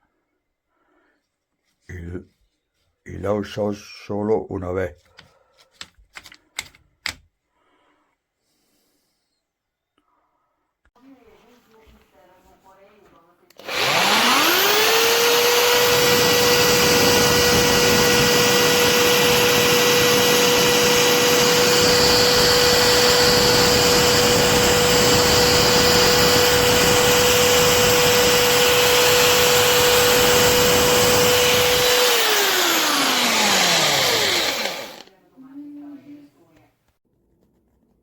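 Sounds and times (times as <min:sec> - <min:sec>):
drill motor winding down: 0:13.6 - 0:35.1
impact drill high whine: 0:13.6 - 0:35.1.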